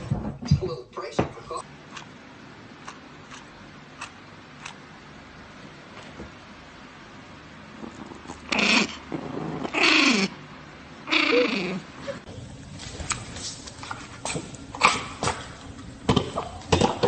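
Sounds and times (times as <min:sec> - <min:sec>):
pet animal calling: 0:11.1 - 0:11.8.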